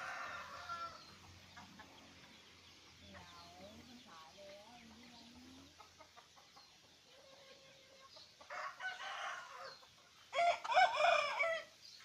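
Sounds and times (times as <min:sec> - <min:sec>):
rooster crowing: 0:00.0 - 0:01.0, 0:08.5 - 0:11.7.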